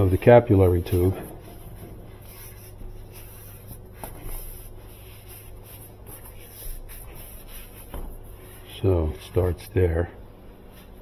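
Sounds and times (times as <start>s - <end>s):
rustling of copper tubing: 0.0s - 9.7s
steady low hum: 0.0s - 11.0s.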